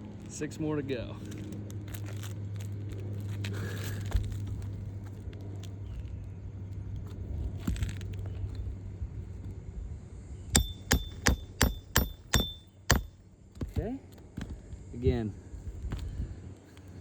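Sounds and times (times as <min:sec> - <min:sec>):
hammer striking nail: 0:10.6 - 0:13.8.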